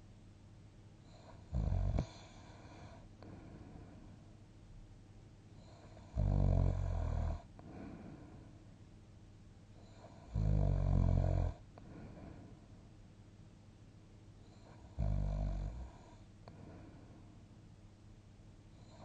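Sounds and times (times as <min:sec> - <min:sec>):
soft breathing: 0:01.0 - 0:04.4, 0:07.4 - 0:08.8, 0:11.6 - 0:13.0, 0:15.8 - 0:17.6
person snoring: 0:01.2 - 0:03.0, 0:10.0 - 0:12.4.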